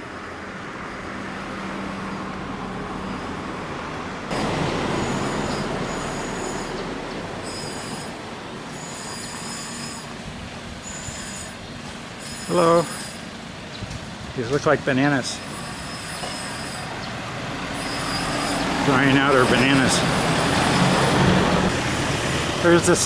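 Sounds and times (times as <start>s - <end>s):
vehicle hum: 0.0s - 23.0s
high-pitched whine: 4.3s - 13.4s.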